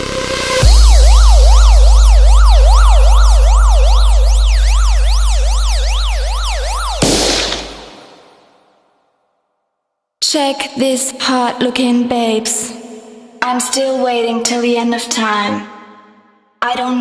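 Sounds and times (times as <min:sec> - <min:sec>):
deep sub-bass tone: 0:00.0 - 0:07.3
burst of noise: 0:00.0 - 0:08.5
synthesized siren sweeping: 0:00.0 - 0:08.5.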